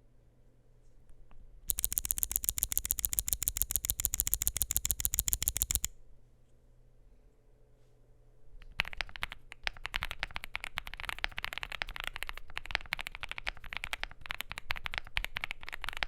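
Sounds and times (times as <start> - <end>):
keyboard typing fast: 1.7 - 5.9, 8.8 - 16.0.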